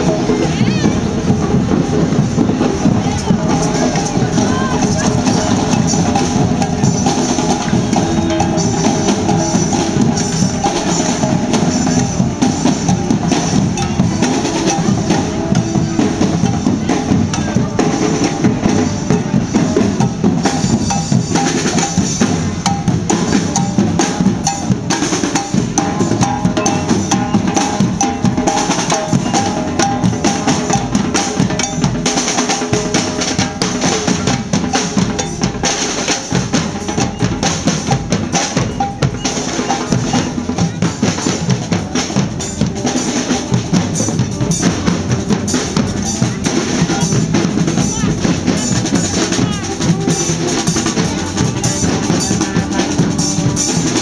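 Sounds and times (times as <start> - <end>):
snare and bass drum beat: 0.0 - 54.0
held pitched notes: 3.0 - 21.8.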